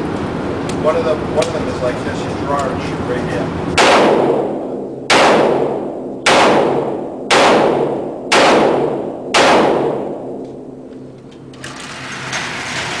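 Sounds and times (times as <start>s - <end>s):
gunshots echoing: 3.8s - 10.9s.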